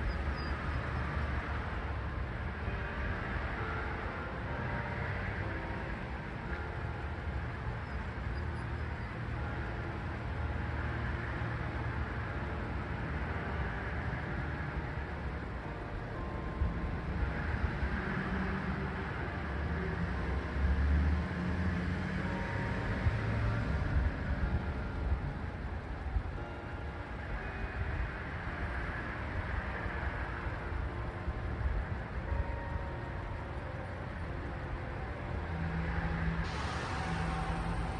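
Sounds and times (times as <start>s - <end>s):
distant church bells ringing: 0.0s - 37.9s
low outdoor rumble: 0.0s - 37.9s.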